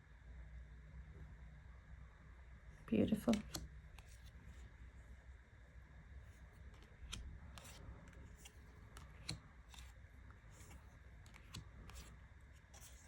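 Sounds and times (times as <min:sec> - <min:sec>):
cards clicking and sliding: 0:03.3 - 0:04.6, 0:06.3 - 0:13.0.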